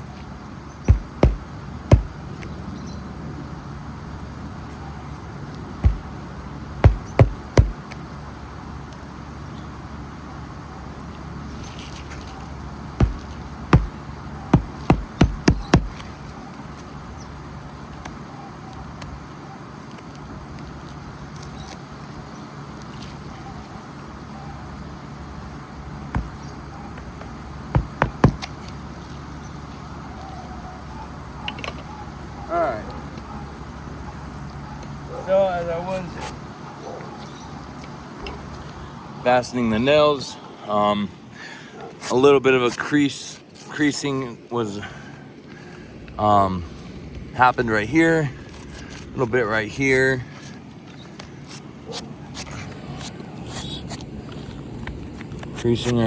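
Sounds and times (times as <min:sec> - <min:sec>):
hammer driving nails into shingle: 0:00.9 - 0:02.3, 0:05.8 - 0:06.1, 0:06.8 - 0:07.9, 0:13.0 - 0:14.0, 0:14.6 - 0:16.1, 0:26.2 - 0:28.6.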